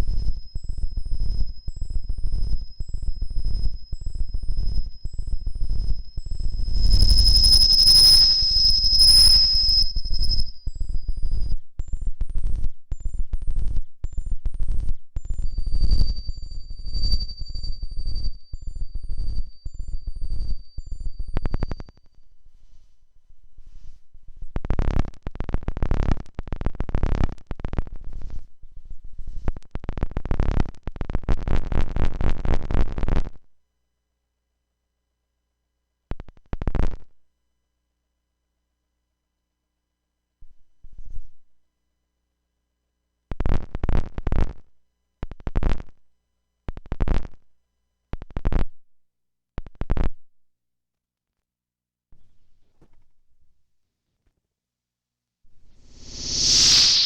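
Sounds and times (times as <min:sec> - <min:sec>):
glitchy electronic pulses: 0:55.9 - 0:57.0.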